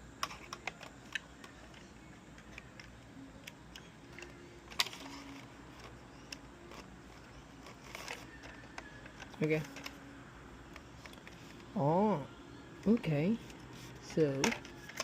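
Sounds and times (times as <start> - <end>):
small plastic parts clicking: 0.2 - 10.0.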